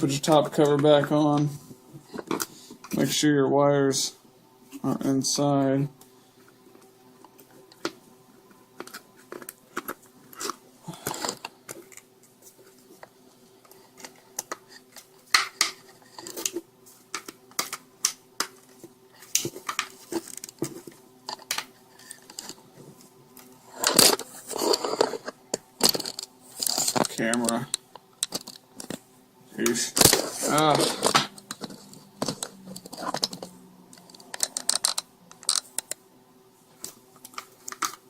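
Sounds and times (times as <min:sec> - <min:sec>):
faint steady hum: 0:00.0 - 0:38.0
plastic scrape: 0:23.7 - 0:27.1, 0:30.0 - 0:35.7.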